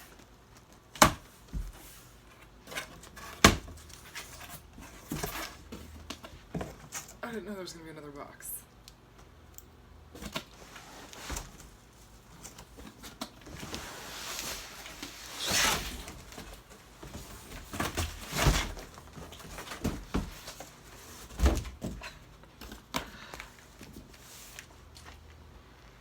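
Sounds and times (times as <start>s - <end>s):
cardboard rustling and scraping: 0.9s - 7.2s, 10.1s - 25.4s
cardboard tearing rustle: 12.4s - 21.6s.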